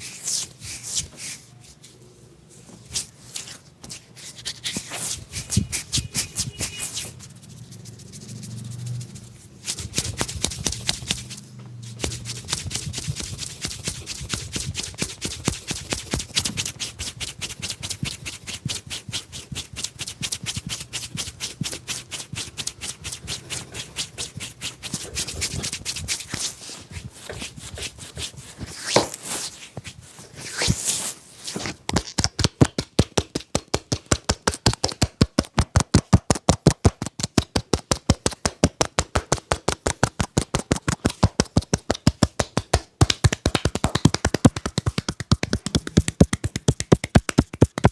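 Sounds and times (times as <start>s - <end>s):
hands slapping on skin: 9.7s - 11.4s, 31.6s - 47.9s.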